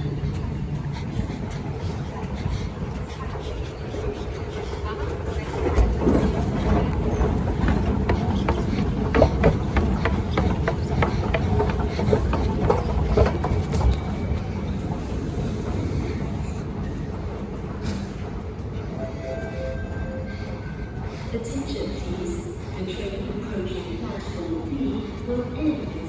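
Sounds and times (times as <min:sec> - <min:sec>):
train low rumble: 0:00.0 - 0:26.0.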